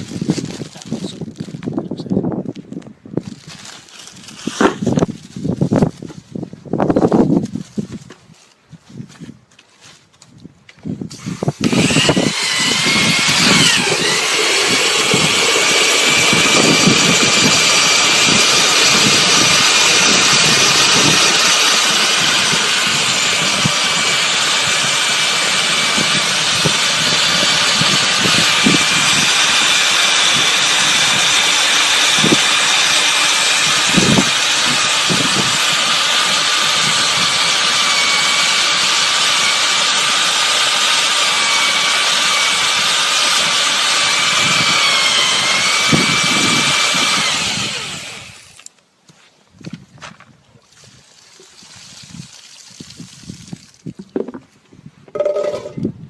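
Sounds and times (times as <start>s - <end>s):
motor whining: 11.1s - 48.7s.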